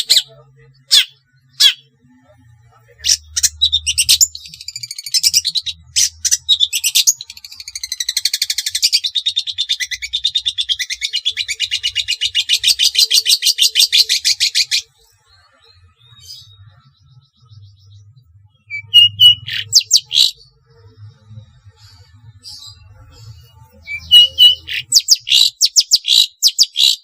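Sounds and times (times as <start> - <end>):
bird chattering trill: 18.7 - 20.4, 23.9 - 27.0.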